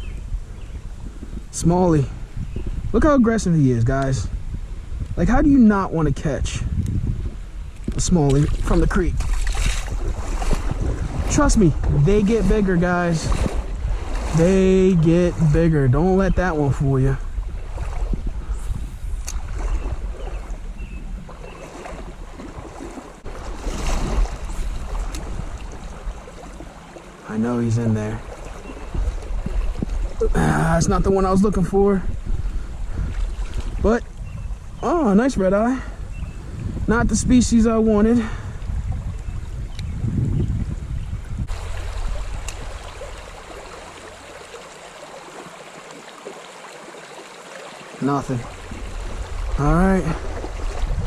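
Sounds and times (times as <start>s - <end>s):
wind buffeting microphone: 0.0s - 45.6s, 48.1s - 51.0s
creek water running: 7.8s - 39.9s, 40.6s - 51.0s
creek water babbling over stones: 21.2s - 30.0s, 41.5s - 51.0s
low rumble: 38.4s - 44.8s, 48.4s - 51.0s.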